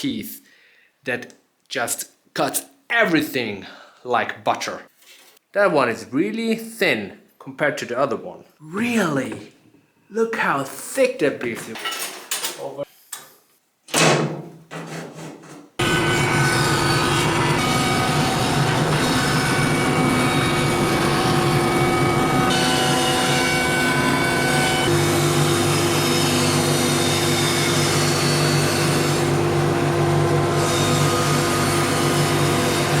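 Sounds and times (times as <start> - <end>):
bandsaw running: 15.8 - 33.0.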